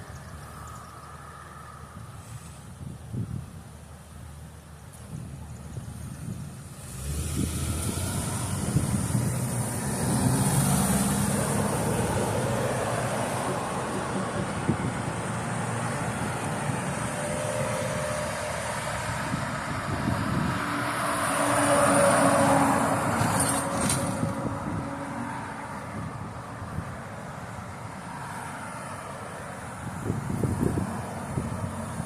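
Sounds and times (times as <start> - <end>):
vehicles driving past: 0.0 - 32.0
loud vehicle passing: 6.7 - 32.0.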